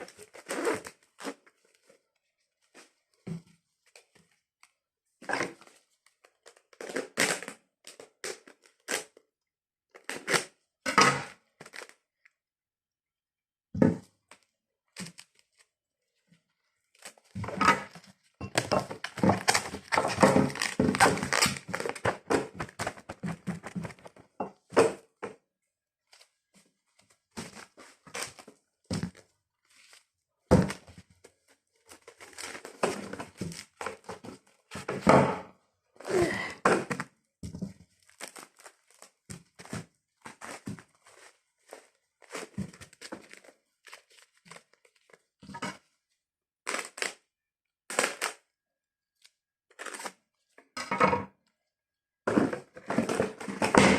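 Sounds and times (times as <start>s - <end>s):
plastic bags crinkling: 18.6s - 24.2s.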